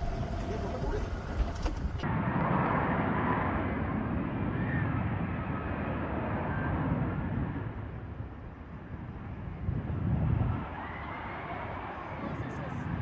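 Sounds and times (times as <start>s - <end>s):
aircraft engine drone: 0.0s - 4.2s.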